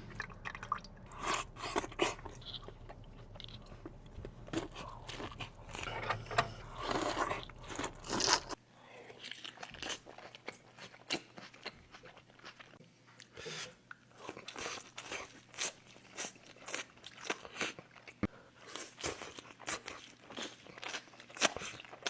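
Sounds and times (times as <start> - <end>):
low background hum: 0.0 - 9.0
crunchy bites and wet chewing: 0.1 - 8.6.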